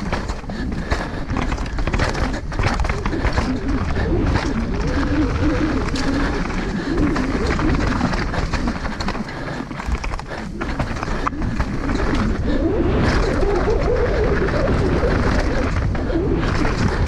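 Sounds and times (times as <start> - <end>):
bike knocking and rattling: 0.0 - 17.0
wind rushing over microphone: 0.0 - 17.0.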